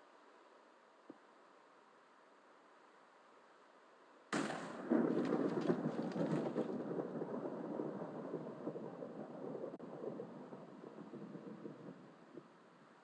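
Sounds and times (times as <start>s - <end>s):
fire crackling with pops: 4.3s - 12.5s.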